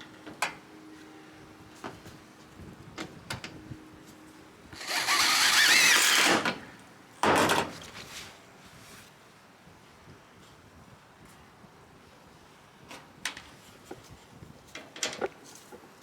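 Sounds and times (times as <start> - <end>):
power drill whining: 4.8 - 6.7.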